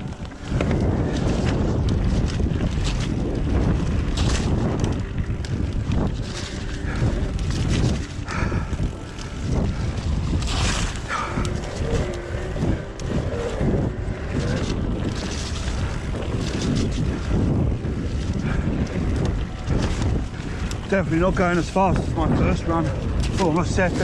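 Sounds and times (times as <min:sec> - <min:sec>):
mountain bike clattering: 0:00.0 - 0:24.0
wind buffeting microphone: 0:00.0 - 0:24.0
tyre roar: 0:10.5 - 0:16.6.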